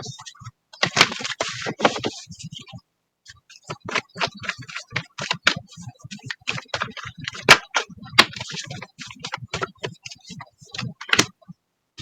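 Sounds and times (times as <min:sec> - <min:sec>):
cards being shuffled: 0:00.8 - 0:02.1, 0:03.7 - 0:05.6, 0:06.3 - 0:10.0.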